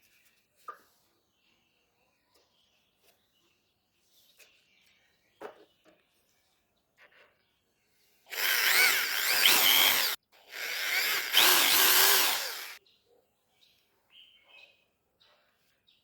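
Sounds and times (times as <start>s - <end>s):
small power tool whining: 8.3s - 12.8s.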